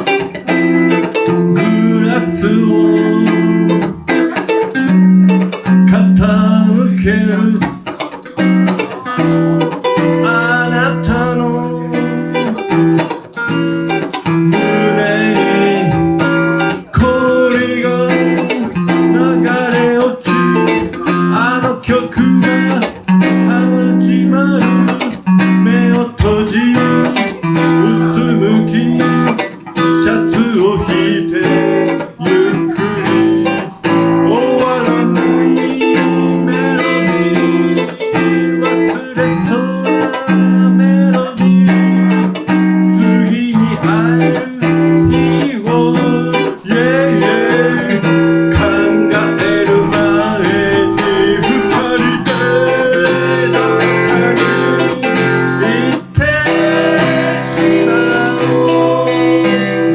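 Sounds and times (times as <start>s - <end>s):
electric guitar playing: 0.0s - 59.9s.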